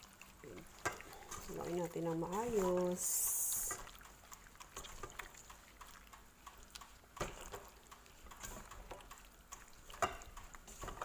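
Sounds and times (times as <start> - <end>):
hands mixing chicken in bowl: 0.0 - 11.0.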